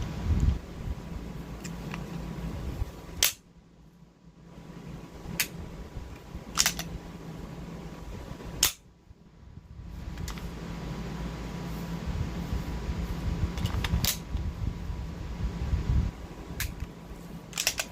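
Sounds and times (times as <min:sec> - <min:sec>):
pistol snapping: 0:03.2 - 0:03.4, 0:06.6 - 0:06.9, 0:08.6 - 0:08.8, 0:17.5 - 0:17.9.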